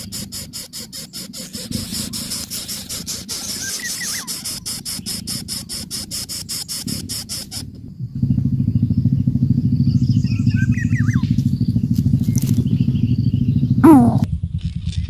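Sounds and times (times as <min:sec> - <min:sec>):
low throbbing motor drone: 0:07.9 - 0:14.5.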